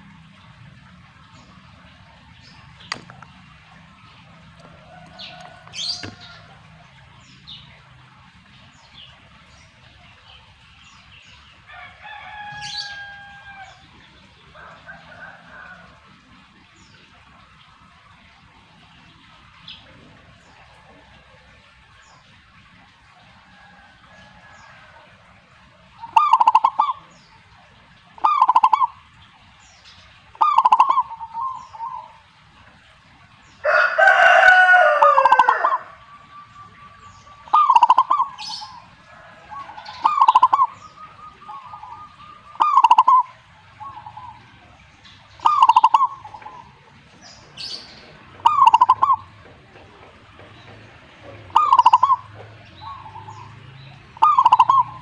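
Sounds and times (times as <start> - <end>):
dove cooing: 1.8 - 8.5, 23.1 - 29.1, 30.3 - 32.4, 33.6 - 55.0
rooster-like crow: 4.7 - 6.6, 11.7 - 13.9, 14.5 - 16.1, 23.4 - 25.3, 33.6 - 36.0, 39.0 - 40.1.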